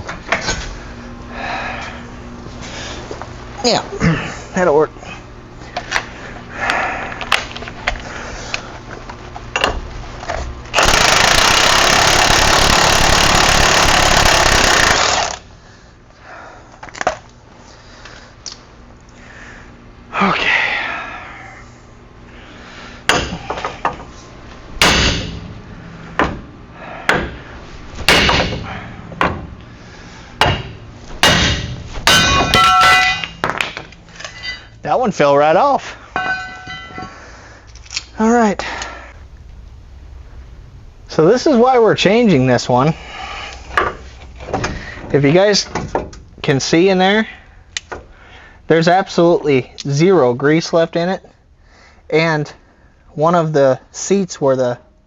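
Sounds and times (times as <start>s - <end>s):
power tool running: 10.7s - 15.5s.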